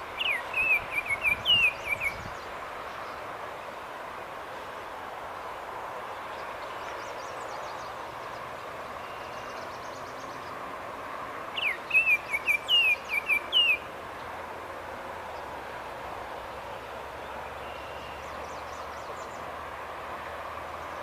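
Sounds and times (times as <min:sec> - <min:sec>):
songbird singing: 0:00.0 - 0:21.0
steady background noise: 0:00.0 - 0:21.0
high bird trill: 0:00.2 - 0:02.3, 0:11.6 - 0:13.9.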